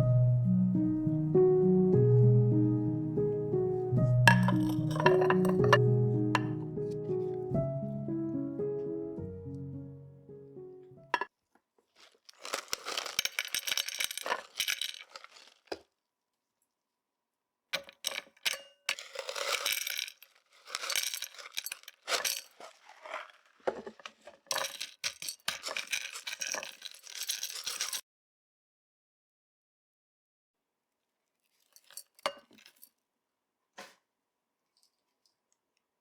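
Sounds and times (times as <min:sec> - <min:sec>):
gravel poured into glass jar: 0:04.3 - 0:05.8, 0:12.0 - 0:15.8, 0:17.8 - 0:28.0.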